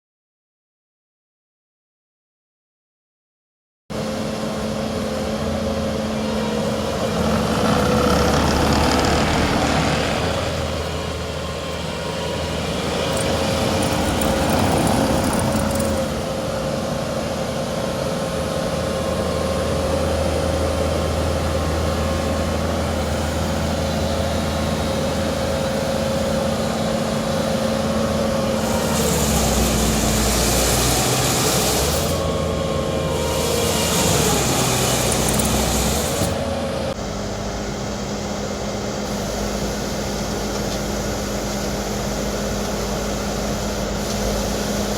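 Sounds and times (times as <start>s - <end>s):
diesel engine running: 4.0s - 44.9s.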